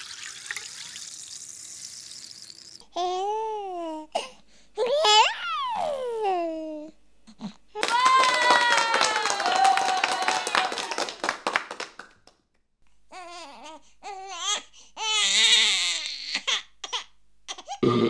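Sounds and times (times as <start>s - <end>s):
baby crying: 4.8s - 6.9s, 13.1s - 17.8s.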